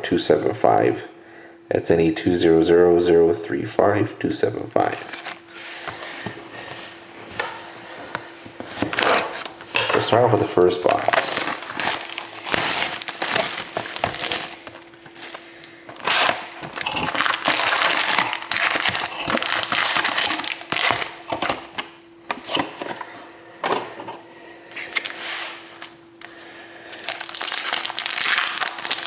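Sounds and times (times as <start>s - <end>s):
faint steady hum: 0.0s - 29.0s
wrappers tearing and crinkling: 4.8s - 5.4s, 10.8s - 21.6s, 26.9s - 29.0s
cardboard cracking: 10.8s - 21.6s, 27.0s - 29.0s.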